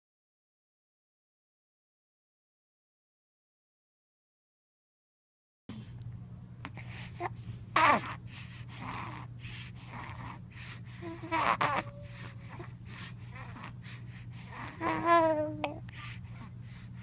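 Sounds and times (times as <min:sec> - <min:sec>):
baby raspy wheezing breaths: 0:06.7 - 0:17.0
baby cooing: 0:07.2 - 0:08.2, 0:08.8 - 0:10.4, 0:11.0 - 0:13.8, 0:14.4 - 0:16.0.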